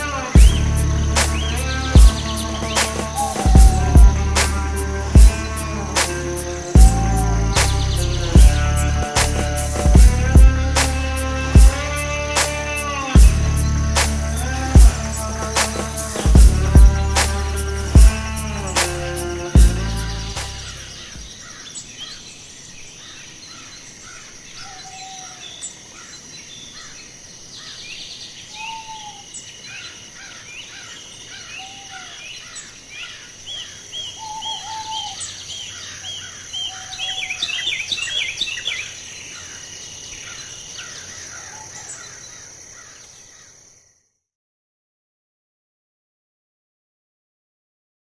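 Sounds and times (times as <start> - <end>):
music track: 0.0 - 21.3
steady high-pitched hum: 0.0 - 21.3
lower arched bird calls: 0.0 - 43.6
songbirds chirping and singing: 0.0 - 43.7.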